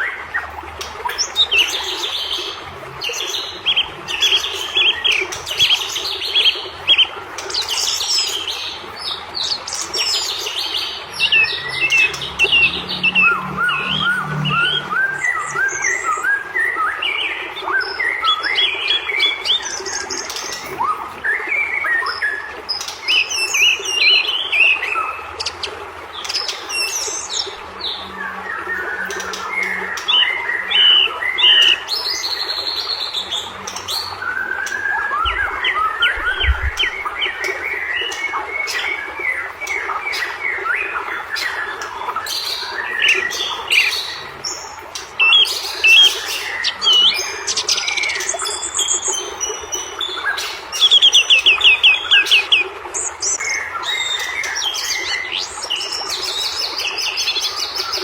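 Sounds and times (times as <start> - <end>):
bird singing loud varied song: 9.4 - 58.0.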